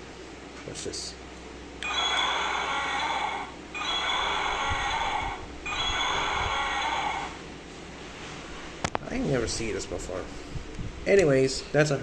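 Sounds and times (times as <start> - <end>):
toy dinosaur electronic roar: 1.8 - 7.4.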